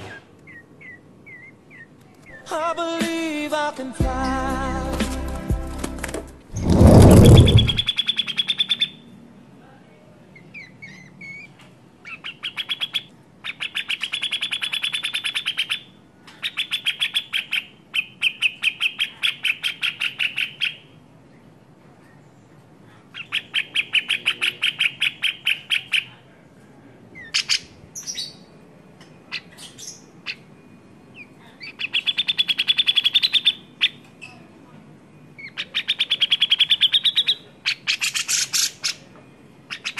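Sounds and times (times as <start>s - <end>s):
loud low rumble: 6.4s - 7.9s
bird rattling chatter: 6.5s - 7.9s.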